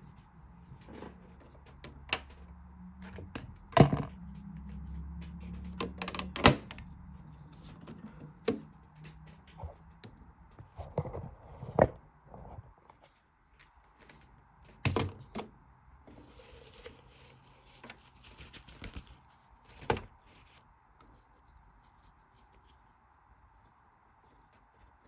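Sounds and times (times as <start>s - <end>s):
toy washing machine knocks and clicks: 3.7s - 4.1s.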